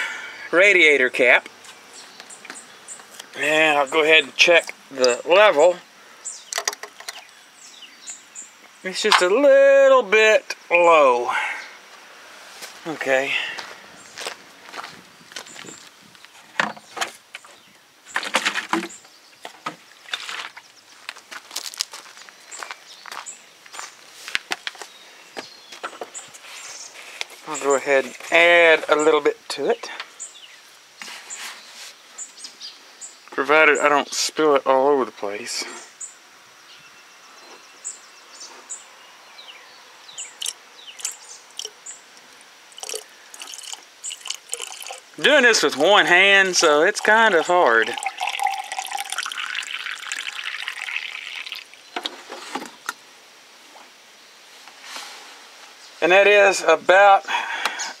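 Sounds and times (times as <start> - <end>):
small birds chirping: 0.0 - 53.1, 53.7 - 58.0
faint steady hiss: 0.0 - 58.0
footsteps crunching: 11.9 - 18.7, 19.4 - 29.0.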